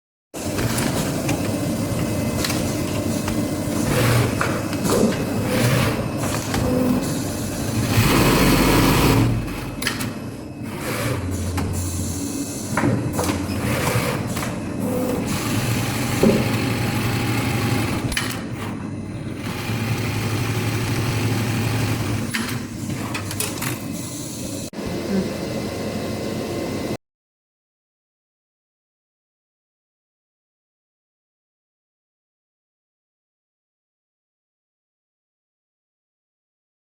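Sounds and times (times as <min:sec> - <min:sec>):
sewing machine motor humming: 0:01.2 - 0:10.0, 0:13.4 - 0:18.4, 0:19.3 - 0:22.3.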